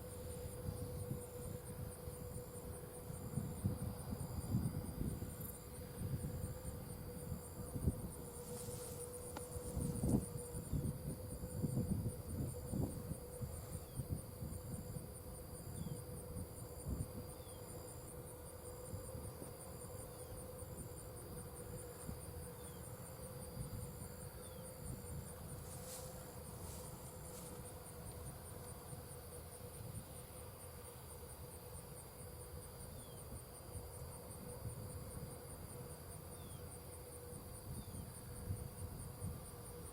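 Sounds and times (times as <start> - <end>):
insects trilling: 0.0 - 39.9
steady hum: 0.0 - 39.9.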